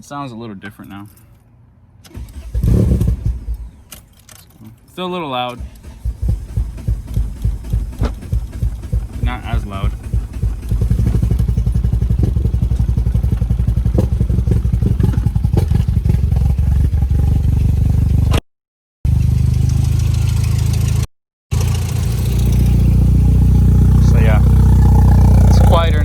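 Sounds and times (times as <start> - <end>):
car engine idling: 5.6 - 18.2, 21.6 - 26.0.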